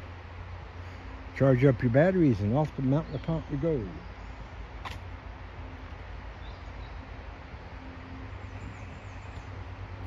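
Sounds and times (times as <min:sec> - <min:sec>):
sharp click: 0:04.8 - 0:05.1.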